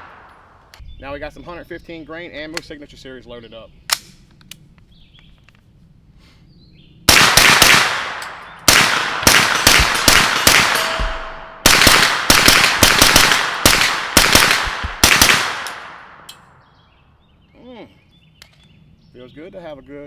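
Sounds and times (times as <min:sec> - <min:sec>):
suppressed gunshots with echo: 0:07.1 - 0:16.4.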